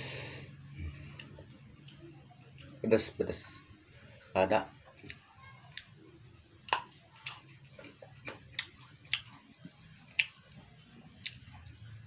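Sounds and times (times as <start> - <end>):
crunchy fruit chewing: 6.6 - 11.8.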